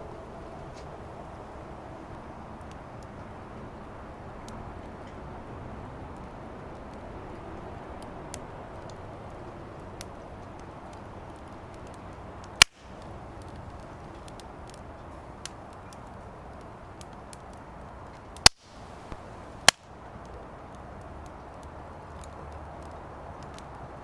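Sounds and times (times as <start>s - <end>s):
fire hissing and crackling: 0.0s - 24.0s
burning wood popping loudly: 8.3s - 24.0s.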